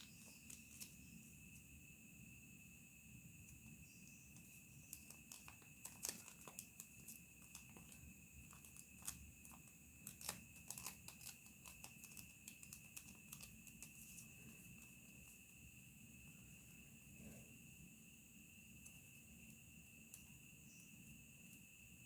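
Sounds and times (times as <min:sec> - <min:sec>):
paper being folded and creased: 0:00.0 - 0:00.9, 0:04.9 - 0:14.9.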